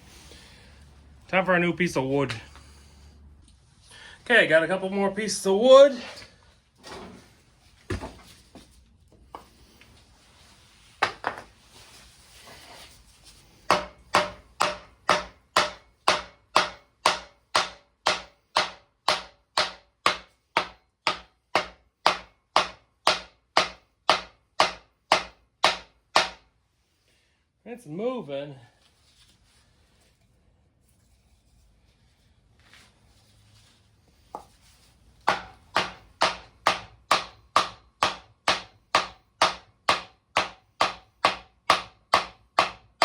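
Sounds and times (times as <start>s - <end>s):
hammer striking wood block: 13.7s - 26.5s, 35.2s - 43.0s.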